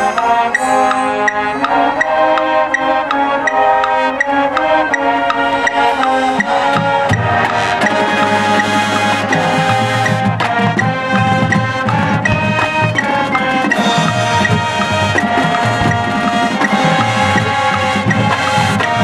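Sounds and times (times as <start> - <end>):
brass chords: 0.0 - 19.0
mallet keyboard notes: 0.0 - 19.0
drums: 5.6 - 19.0.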